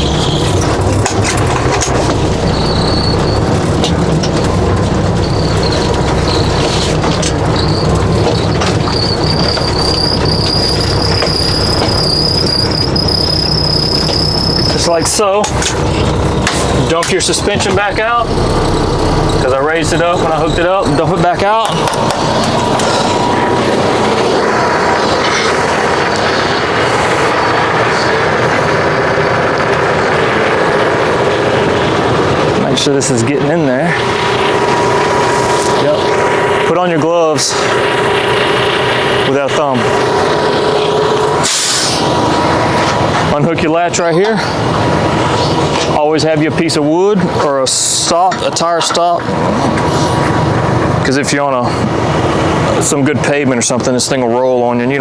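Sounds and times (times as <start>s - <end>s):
high squeal: 0.0s - 32.0s
truck diesel engine running: 0.0s - 55.0s.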